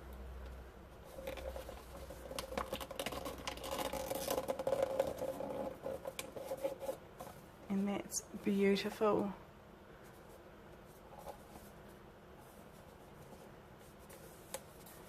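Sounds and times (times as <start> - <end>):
wrapping paper rustling: 1.0 - 7.0.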